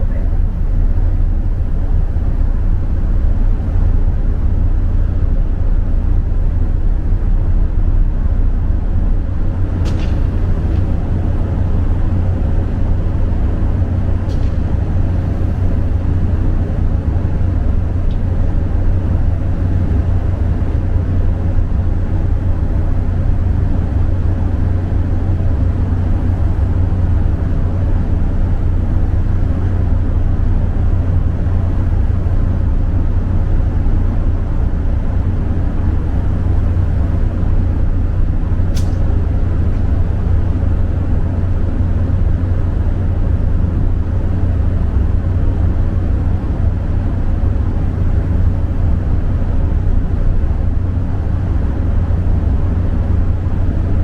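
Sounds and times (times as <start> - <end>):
ship engines droning: 0.0 - 54.0
faint click: 38.8 - 39.1.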